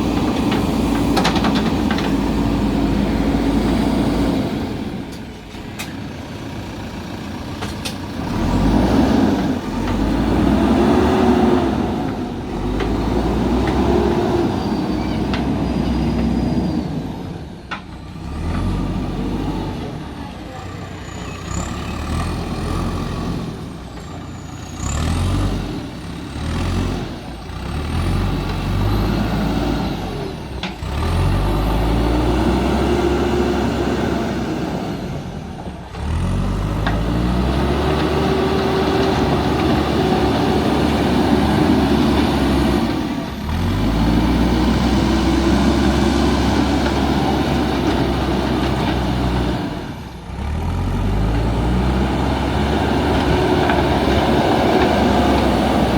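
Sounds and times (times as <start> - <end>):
diesel engine working under load: 0.0 - 55.9.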